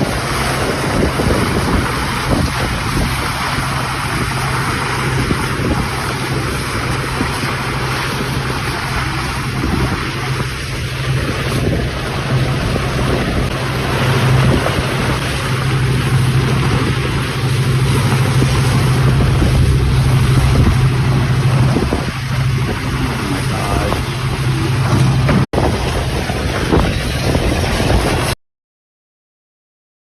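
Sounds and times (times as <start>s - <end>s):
low rumble: 0.0s - 28.4s
strong wind buffeting microphone: 0.0s - 28.4s.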